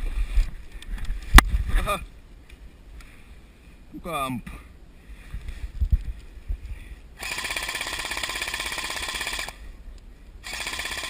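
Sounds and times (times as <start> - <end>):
airsoft gun firing full auto: 7.2 - 9.6, 10.4 - 11.0.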